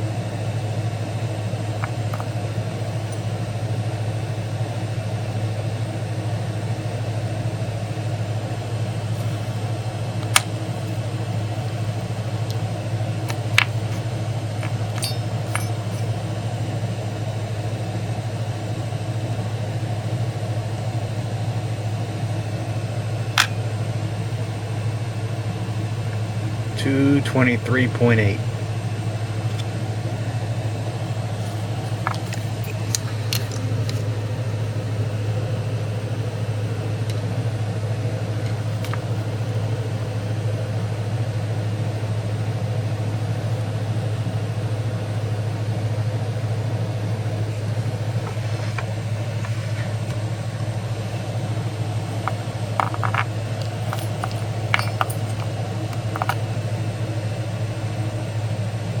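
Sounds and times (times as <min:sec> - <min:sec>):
low mechanical hum: 0:00.0 - 0:59.0
light clicks and rattles: 0:52.3 - 0:56.4.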